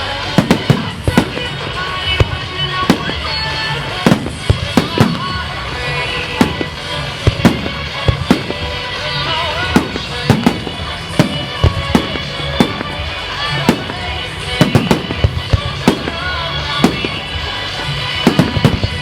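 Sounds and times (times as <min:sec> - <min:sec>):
fireworks bangs: 0:00.0 - 0:19.0
music: 0:00.0 - 0:19.0.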